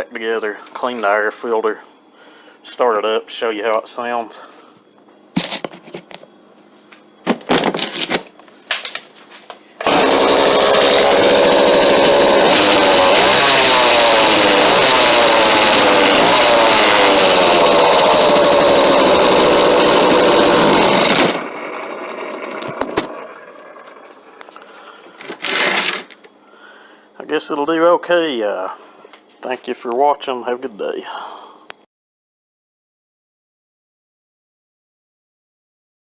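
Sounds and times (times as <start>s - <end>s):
chainsaw running and revving: 9.8s - 24.2s.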